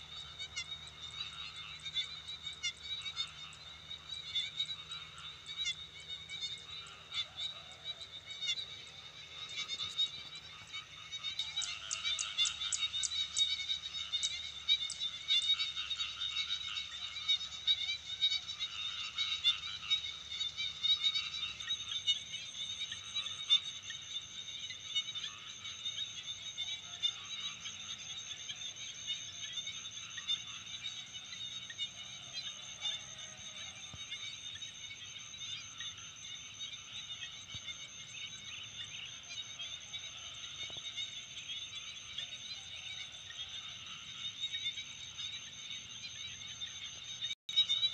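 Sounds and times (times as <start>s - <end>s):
frogs croaking in chorus: 0.0s - 47.9s.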